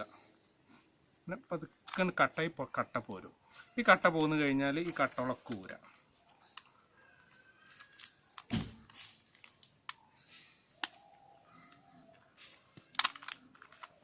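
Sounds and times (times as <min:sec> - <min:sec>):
plastic puzzle cube clicking: 0:12.8 - 0:14.0.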